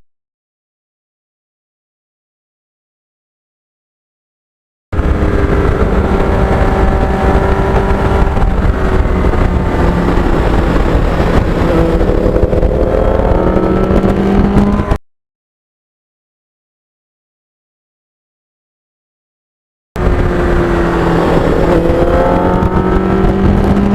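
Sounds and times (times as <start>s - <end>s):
motorcycle engine running: 5.0s - 15.0s, 20.0s - 23.9s
wind rumble on microphone: 5.0s - 15.0s, 20.0s - 23.9s.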